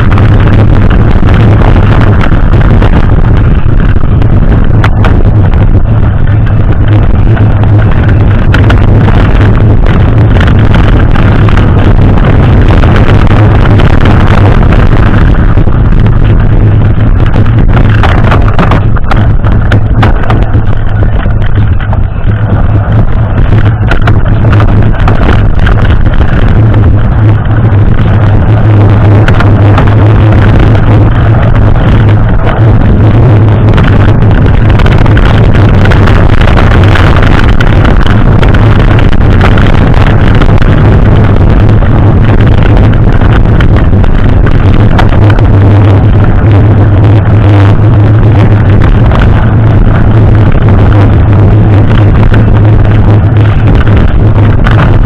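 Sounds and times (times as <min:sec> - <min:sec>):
bike rattling and knocking: 0:00.0 - 0:43.8
wind buffeting microphone: 0:00.0 - 0:55.0.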